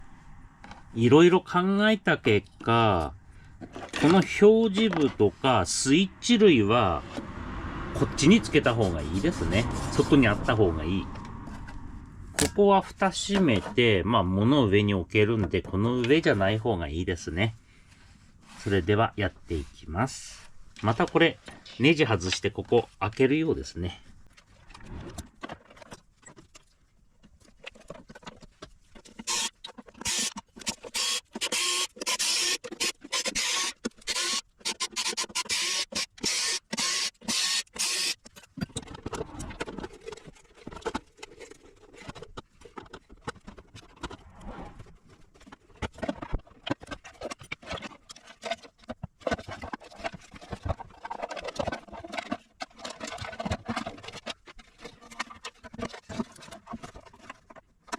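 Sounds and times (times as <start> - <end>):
power screwdriver whirring: 29.2 - 38.3
screws clicking and rattling: 29.2 - 38.8.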